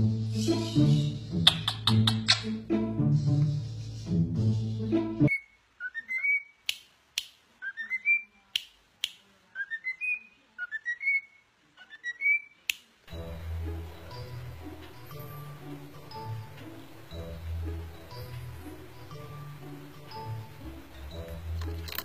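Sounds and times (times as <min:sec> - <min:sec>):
music: 0:00.0 - 0:05.3, 0:13.1 - 0:22.0
bird whistling a phrase: 0:05.3 - 0:06.6, 0:07.6 - 0:08.3.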